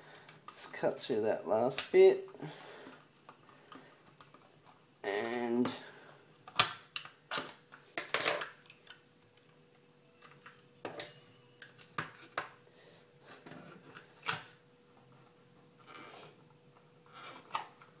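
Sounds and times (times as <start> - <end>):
plastic casing clicks and snaps: 6.5 - 9.0.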